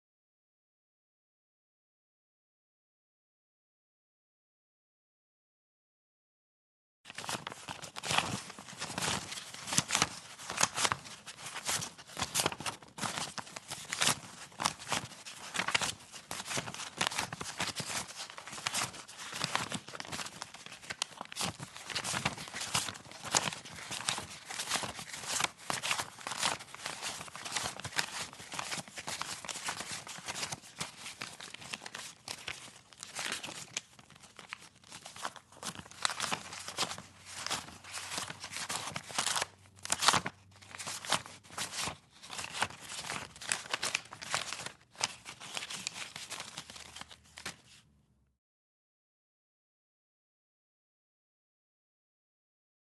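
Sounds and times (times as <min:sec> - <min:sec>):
banknotes rustling and crinkling: 0:07.1 - 0:47.9.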